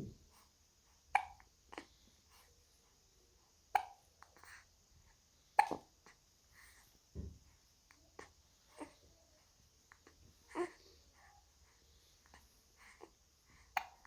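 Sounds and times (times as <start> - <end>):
baby hiccuping: 1.1 - 1.4, 3.8 - 4.0, 5.6 - 5.8, 13.8 - 14.0.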